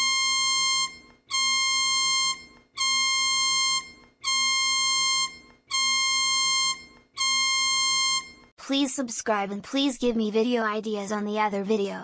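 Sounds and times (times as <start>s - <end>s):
harsh alarm beep: 0.0s - 8.5s.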